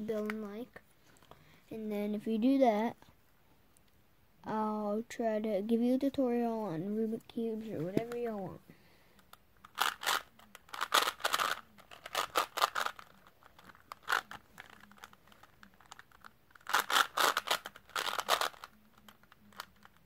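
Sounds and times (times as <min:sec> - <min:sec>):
puzzle cube twisting clicks: 0:09.2 - 0:20.0.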